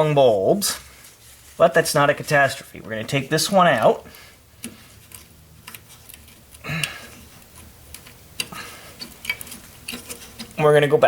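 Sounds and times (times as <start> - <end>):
small sharp clicks and taps: 4.6 - 10.6.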